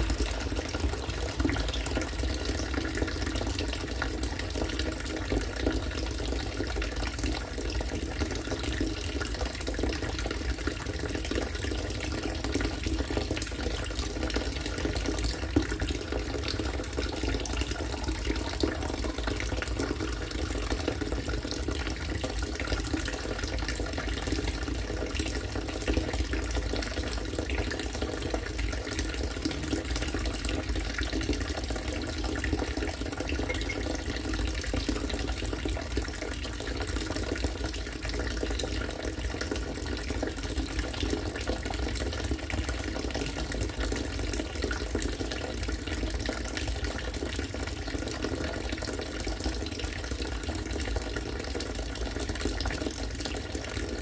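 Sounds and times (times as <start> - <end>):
water pouring and splashing: 0.0 - 54.0.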